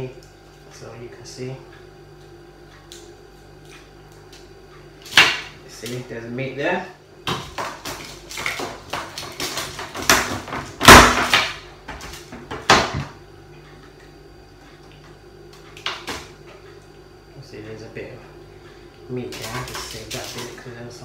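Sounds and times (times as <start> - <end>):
lobster shell cracking: 3.6 - 6.0, 7.3 - 12.2, 19.3 - 20.6.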